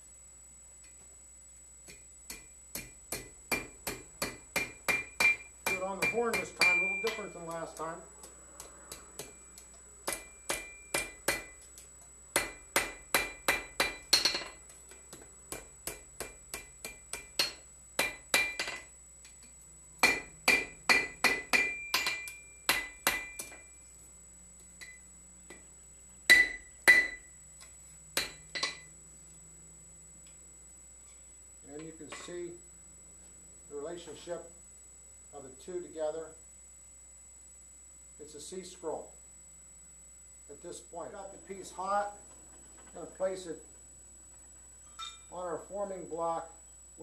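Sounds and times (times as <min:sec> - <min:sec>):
hammer striking steel on anvil: 0:01.9 - 0:07.9, 0:08.6 - 0:11.7, 0:12.3 - 0:18.9, 0:20.0 - 0:23.7, 0:24.8 - 0:25.6, 0:26.3 - 0:27.3, 0:28.2 - 0:28.9, 0:45.0 - 0:45.3.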